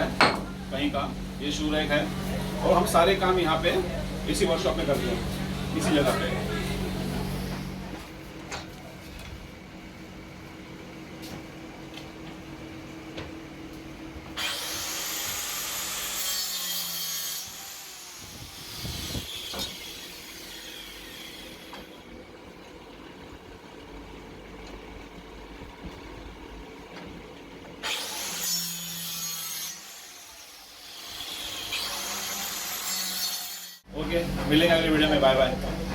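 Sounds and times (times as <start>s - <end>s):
low machine hum: 0.0s - 14.4s, 18.4s - 27.8s, 33.9s - 35.9s
power tool cutting wood: 14.4s - 22.1s, 27.8s - 33.9s.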